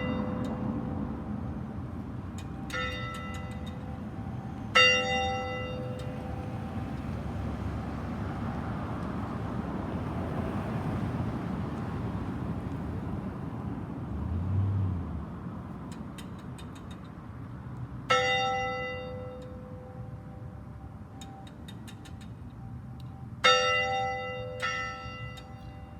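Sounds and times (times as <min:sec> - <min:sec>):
church bell tolling: 0:00.0 - 0:00.8, 0:02.7 - 0:03.9, 0:04.8 - 0:06.4, 0:18.1 - 0:20.1, 0:23.4 - 0:25.9.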